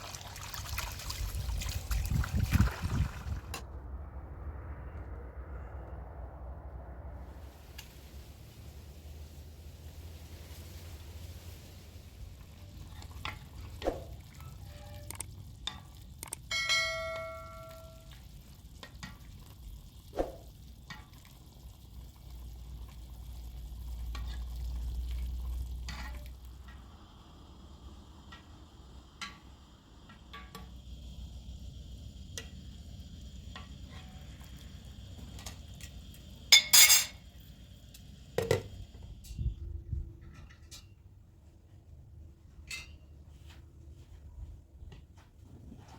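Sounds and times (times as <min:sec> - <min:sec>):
utensils and dishes clinking: 0:36.6 - 0:37.3.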